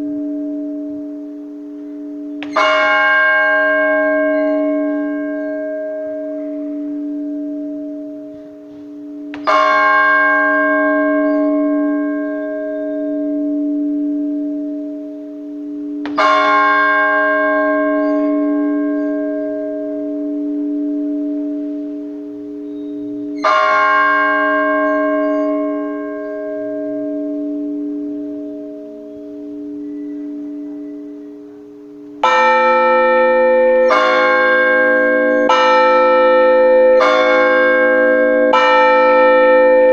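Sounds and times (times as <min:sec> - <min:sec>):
large church bell tolling slowly: 0:00.0 - 0:39.9
several church bells pealing: 0:00.0 - 0:39.9.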